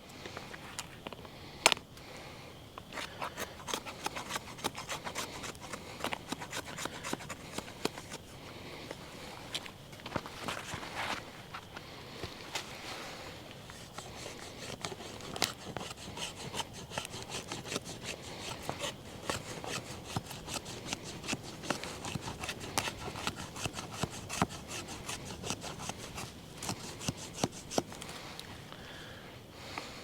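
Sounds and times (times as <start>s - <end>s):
machete scraping and cutting wood: 2.8s - 8.3s, 10.2s - 11.8s, 12.4s - 28.1s.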